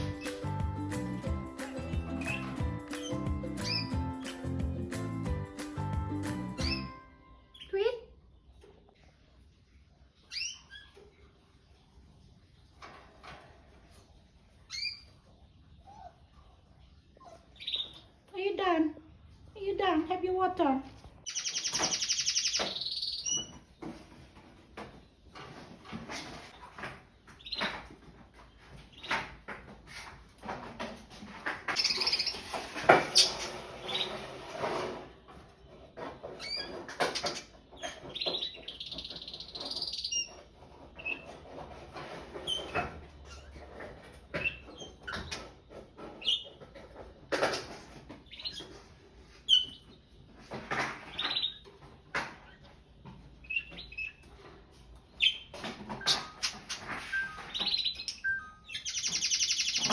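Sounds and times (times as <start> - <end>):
birds rustling in cage: 0.0 - 6.9, 21.0 - 58.2
canaries chirping: 0.0 - 18.8, 19.7 - 59.9.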